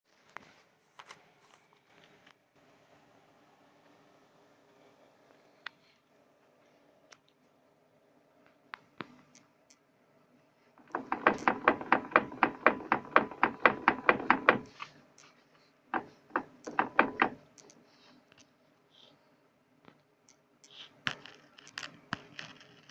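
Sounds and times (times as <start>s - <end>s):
driveline clunking: 10.8s - 14.8s, 15.9s - 17.8s.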